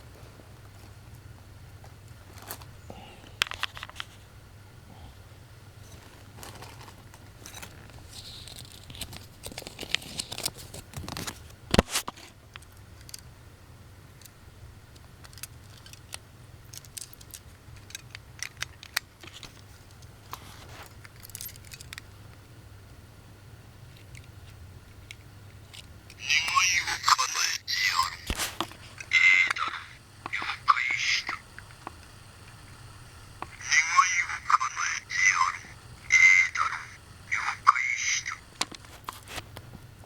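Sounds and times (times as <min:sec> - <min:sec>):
faint low hum: 0:00.0 - 0:40.0
plastic packaging crinkling: 0:05.9 - 0:12.1, 0:28.2 - 0:29.1.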